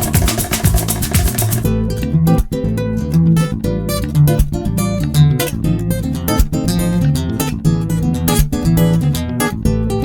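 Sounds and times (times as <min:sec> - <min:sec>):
drum beat: 0:00.0 - 0:01.7
strummed acoustic guitar: 0:00.0 - 0:10.0.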